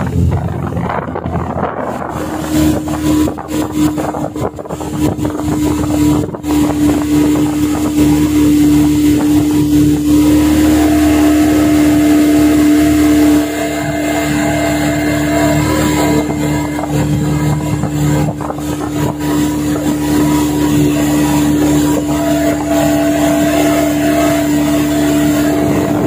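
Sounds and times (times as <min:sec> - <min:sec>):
outboard motor running: 0:00.0 - 0:26.0.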